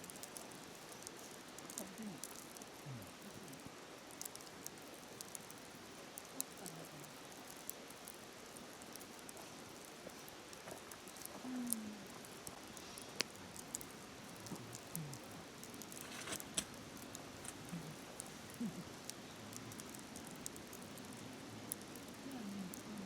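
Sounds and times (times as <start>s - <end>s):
campfire crackling and popping: 0.0s - 23.0s.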